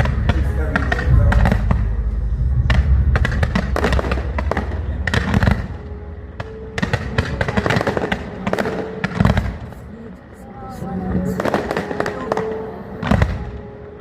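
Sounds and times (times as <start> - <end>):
deep booming rumble: 0.0 - 6.1
fireworks crackling bangs: 0.0 - 9.9, 11.1 - 13.7.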